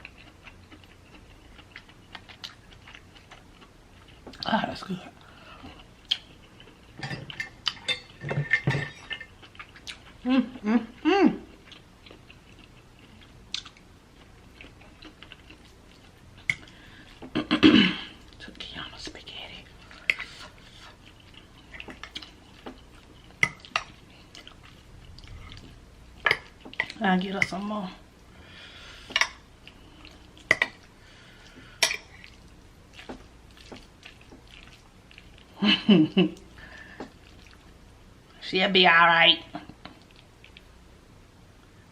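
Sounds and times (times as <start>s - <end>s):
chewing and wet mouth sounds: 0.0s - 7.9s, 9.1s - 10.3s, 11.4s - 17.4s, 18.2s - 28.2s, 28.9s - 35.6s, 36.3s - 37.9s, 39.5s - 40.8s
utensils clacking against dishes: 7.0s - 9.3s.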